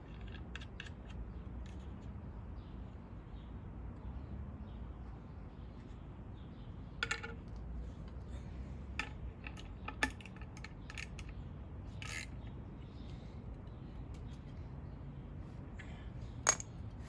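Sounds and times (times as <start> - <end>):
low steady background hum: 0.0 - 17.0
small metallic clicks and clinks: 9.0 - 12.6, 16.4 - 16.8.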